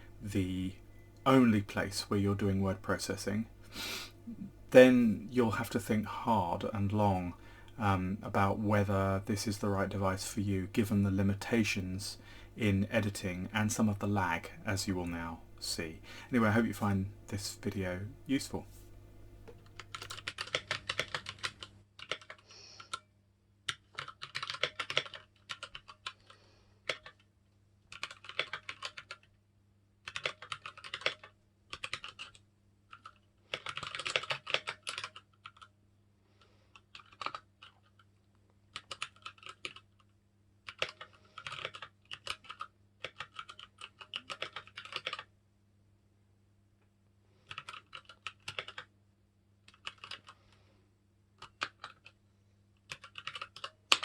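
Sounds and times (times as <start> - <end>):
faint low hum: 0.0 - 24.2
mechanical keyboard typing: 19.7 - 23.0, 23.7 - 27.3, 27.9 - 29.3, 30.0 - 35.7, 36.7 - 38.1, 38.7 - 45.3, 47.4 - 48.9, 49.6 - 50.4, 51.4 - 52.2, 52.8 - 54.0.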